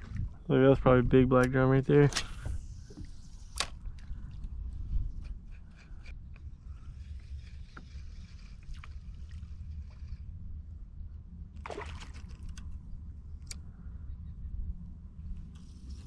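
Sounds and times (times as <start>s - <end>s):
steady low rumble: 0.0s - 16.0s
water lapping against kayak hull: 2.3s - 6.0s, 11.5s - 12.8s.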